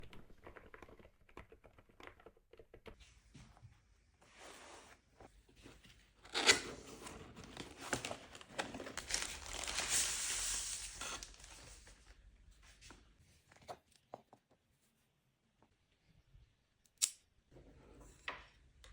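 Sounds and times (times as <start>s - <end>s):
packaging crinkling and tearing: 7.4s - 12.0s.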